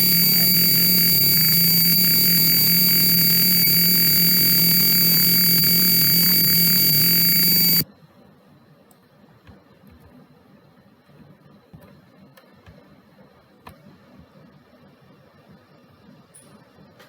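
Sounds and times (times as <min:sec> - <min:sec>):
piezo buzzer harsh buzz: 0:00.0 - 0:07.8.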